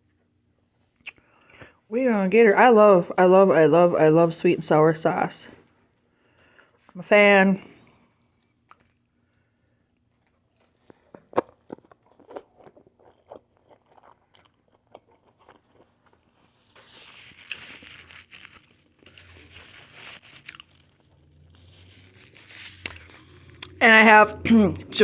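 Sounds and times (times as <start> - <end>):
close chewing with crunches: 10.0 - 23.8.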